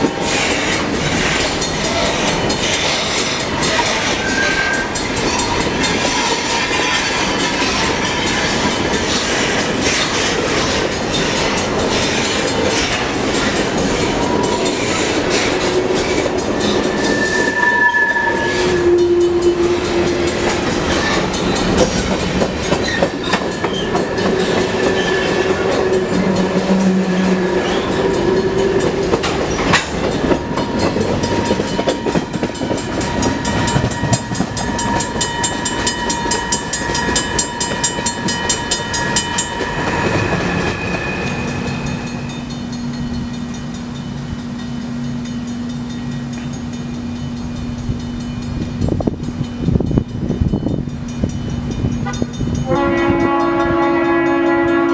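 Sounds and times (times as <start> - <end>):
train wheels rolling on rails: 0.0 - 54.9
steady high tones: 10.9 - 52.6.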